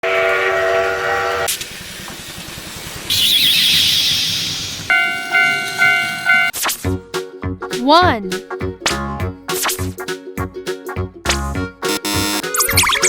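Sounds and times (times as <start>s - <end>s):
steam-train whistle chord: 0.0s - 1.5s, 4.9s - 6.5s
level-crossing bell ringing: 4.9s - 6.6s.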